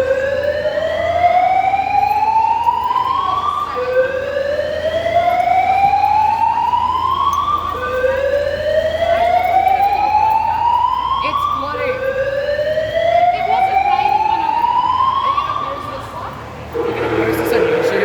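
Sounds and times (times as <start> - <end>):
evacuation alarm rising whoop: 16.7 - 18.0.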